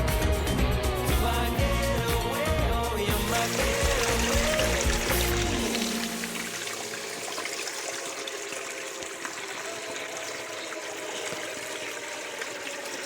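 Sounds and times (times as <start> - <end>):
river water running over rocks: 3.1 - 13.0.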